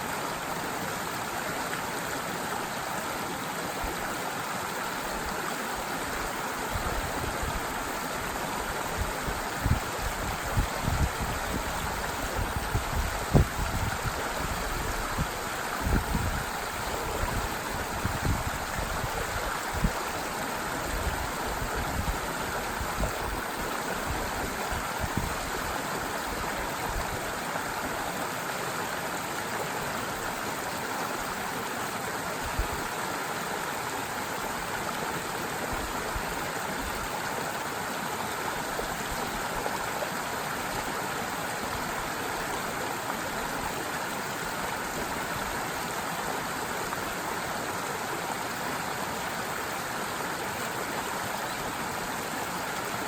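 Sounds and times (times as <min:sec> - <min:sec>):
stream water running over stones: 0:00.0 - 0:53.0.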